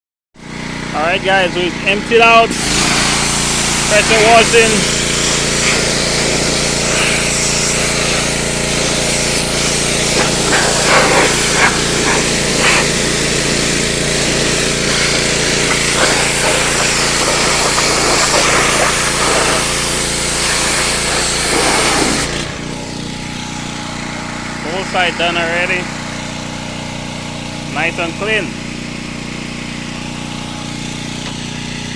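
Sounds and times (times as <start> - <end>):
pressure washer engine droning: 0.4 - 31.9
high-pressure water spray hissing: 2.5 - 27.9.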